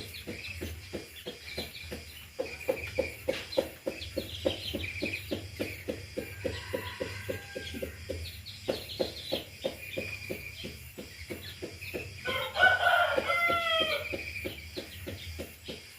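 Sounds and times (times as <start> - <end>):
small birds chirping: 0.0 - 15.9
drawn-out bird call falling pitch: 12.3 - 14.1.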